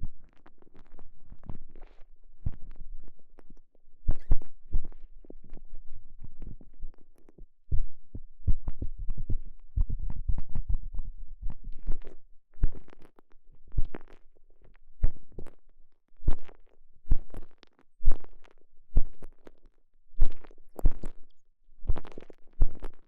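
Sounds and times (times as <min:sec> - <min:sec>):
low thumps against microphone: 0:07.7 - 0:12.0.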